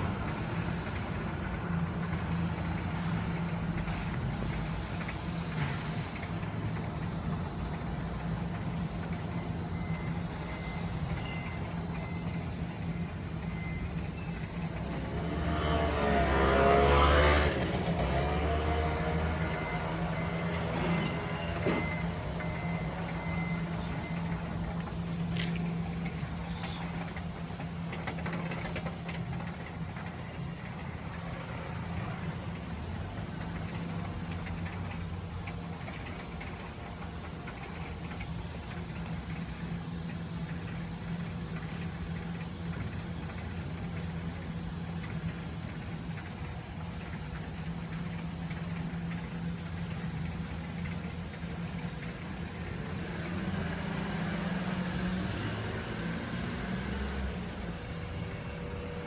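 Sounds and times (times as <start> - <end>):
faint street noise: 0.0 - 59.0
vehicle engine idling: 17.6 - 59.0.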